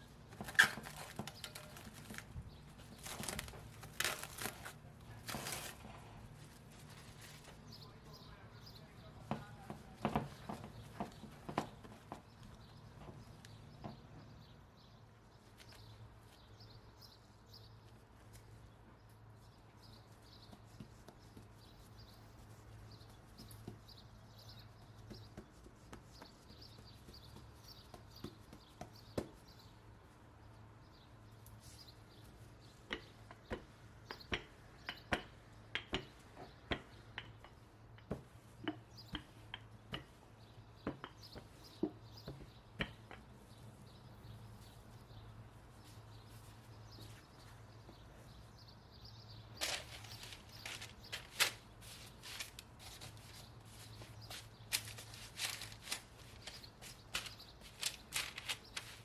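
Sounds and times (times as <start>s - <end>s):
sharp taps and knocks: 9.2s - 14.1s, 32.9s - 40.2s, 40.8s - 43.4s.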